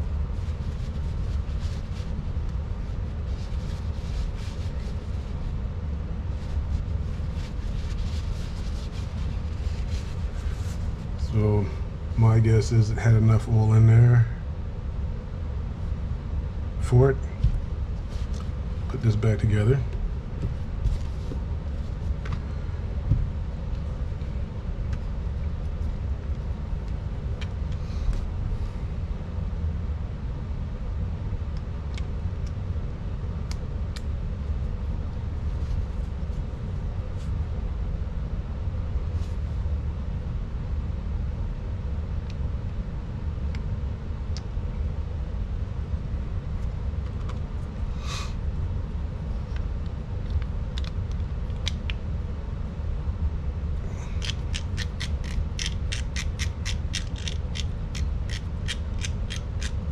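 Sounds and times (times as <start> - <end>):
low background rumble: 0.0 - 59.9
small parts clicking: 54.2 - 59.8.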